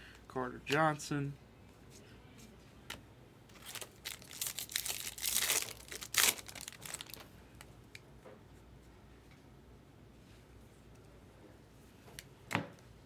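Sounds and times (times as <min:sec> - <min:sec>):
foil wrapper tearing and crinkling: 0:03.6 - 0:07.3.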